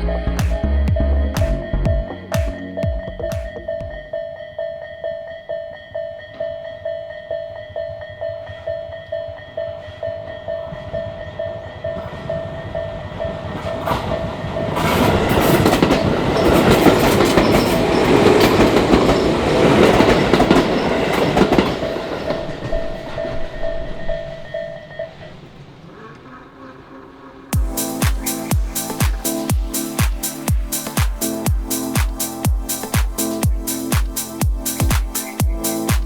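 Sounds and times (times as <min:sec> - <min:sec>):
level crossing bell ringing: 0:00.0 - 0:25.4
train wheels clattering: 0:09.4 - 0:23.3.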